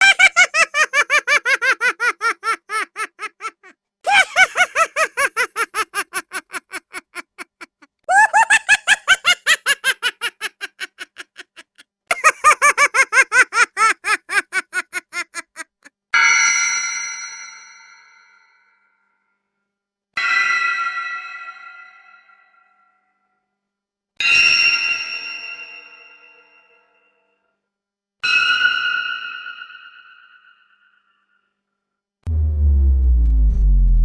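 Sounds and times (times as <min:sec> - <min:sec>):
high-pitched laugh: 0:00.0 - 0:15.9.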